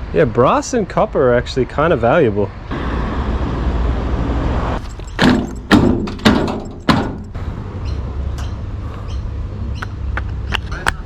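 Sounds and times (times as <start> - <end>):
hard knocks and clunks: 4.8 - 7.4.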